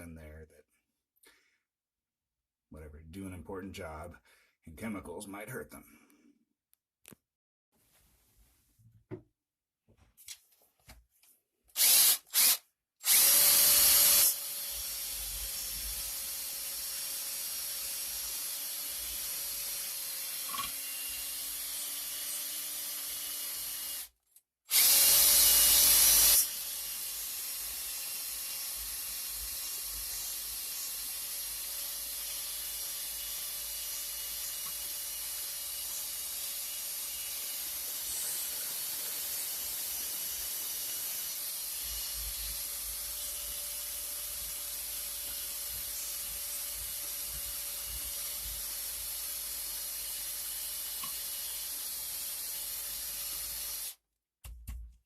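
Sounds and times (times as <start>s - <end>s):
cordless drill motor hum: 11.8s - 24.1s, 24.7s - 54.0s.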